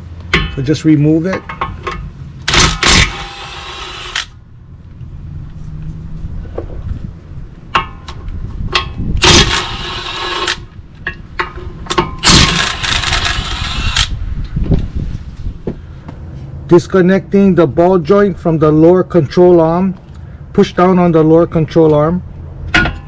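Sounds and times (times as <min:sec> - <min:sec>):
impact wrench running: 0:02.5 - 0:04.4, 0:09.2 - 0:10.6, 0:12.2 - 0:14.1.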